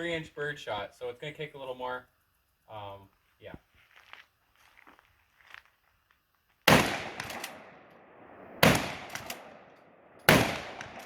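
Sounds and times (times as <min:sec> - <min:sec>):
shotgun shots: 0:06.7 - 0:11.0.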